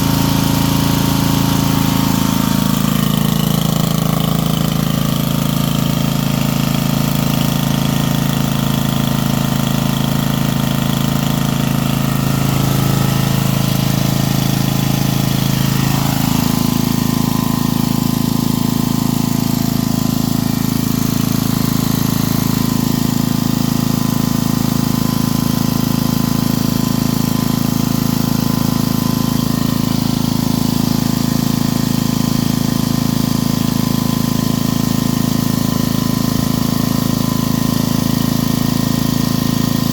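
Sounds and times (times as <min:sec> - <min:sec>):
portable generator engine running: 0:00.0 - 0:39.9.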